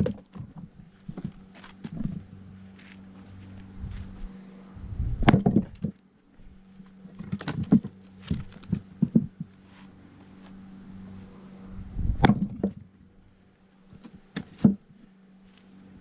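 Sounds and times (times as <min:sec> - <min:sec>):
axe chopping wood: 0:05.2 - 0:06.0, 0:12.2 - 0:12.8.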